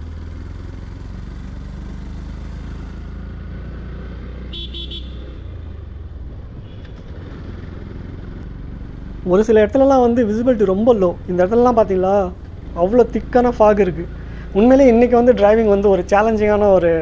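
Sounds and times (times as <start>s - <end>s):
horn toots: 4.5s - 5.5s
motorcycle engine running: 4.5s - 17.0s.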